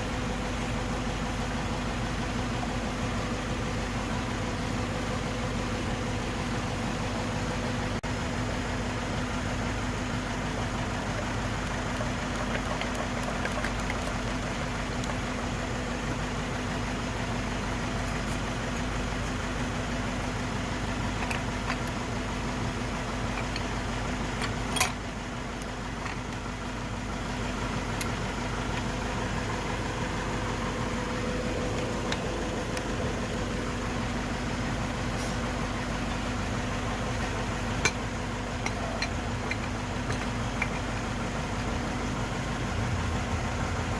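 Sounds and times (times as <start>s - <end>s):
mechanical hum: 0.0s - 43.9s.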